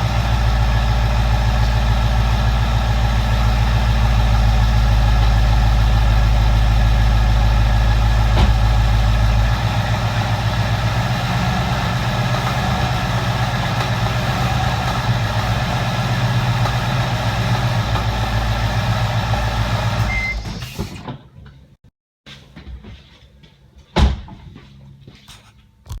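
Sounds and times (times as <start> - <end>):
car engine running with knock: 0.0 - 20.1.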